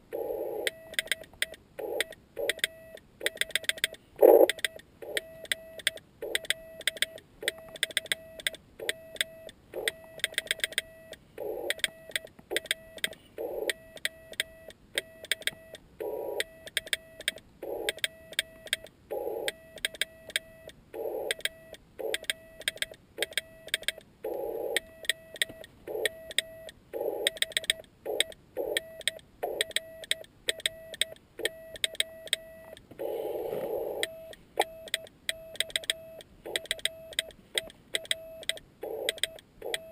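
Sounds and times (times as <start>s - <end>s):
morse code tone: 4.2s - 39.9s
radio hiss: 33.0s - 34.0s.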